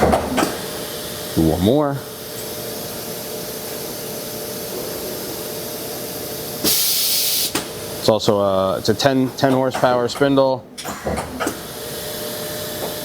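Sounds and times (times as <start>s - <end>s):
machine hum and hiss: 0.0s - 13.0s
loud burst of air hiss: 6.6s - 7.7s.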